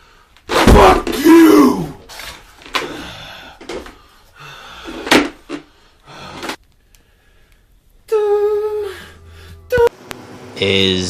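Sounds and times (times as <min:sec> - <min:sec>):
steady held tone: 0:08.1 - 0:11.0.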